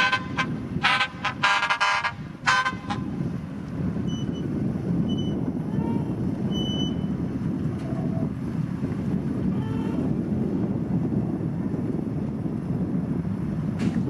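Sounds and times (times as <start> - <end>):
vehicle horn honking: 0.0 - 3.1
diesel machinery rumbling: 0.0 - 14.0.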